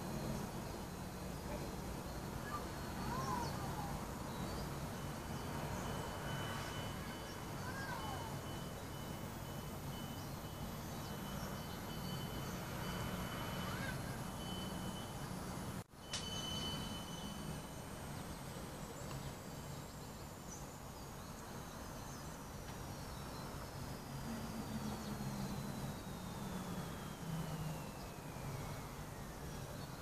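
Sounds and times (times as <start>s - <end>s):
low wavering droning hum: 0.0s - 30.0s
outdoor ambience: 0.0s - 30.0s
faint bird chirps: 0.1s - 15.4s.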